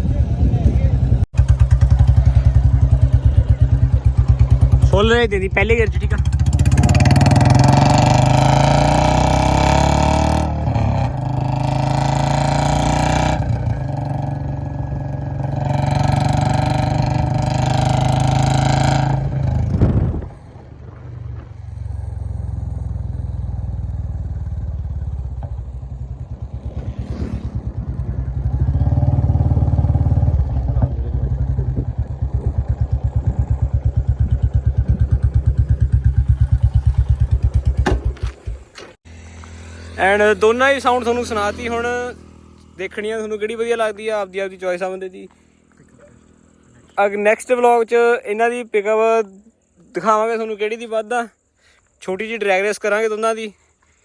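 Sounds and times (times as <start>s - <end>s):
motorcycle engine revving: 0.0s - 44.7s
exhaust thump: 0.4s - 39.6s.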